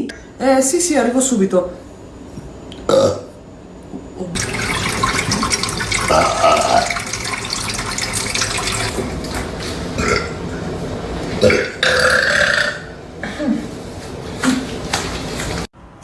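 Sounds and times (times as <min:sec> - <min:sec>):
running water rushing: 0:04.4 - 0:09.6.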